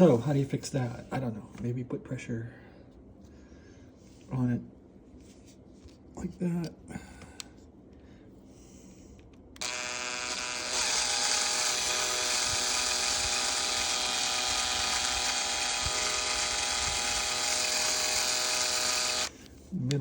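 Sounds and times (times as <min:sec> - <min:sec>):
electric drill whining: 0:09.6 - 0:19.4.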